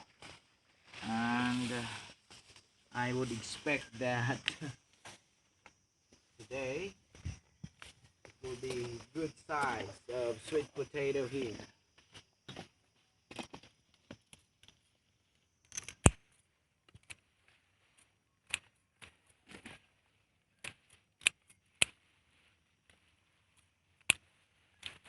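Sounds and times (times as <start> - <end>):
hand tool clicking in soil: 11.6 - 25.0.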